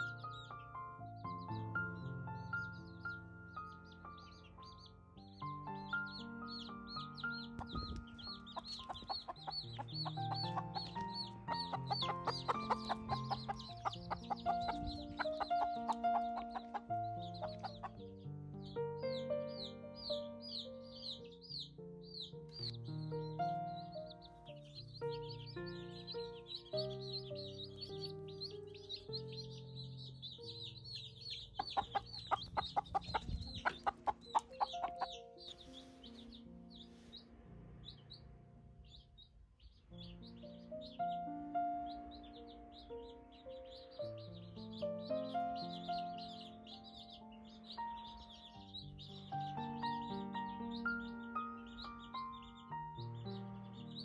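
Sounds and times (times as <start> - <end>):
background music of held notes: 0.0 - 54.0
chicks peeping: 0.0 - 54.0
hen clucking: 7.5 - 18.1, 31.3 - 35.6.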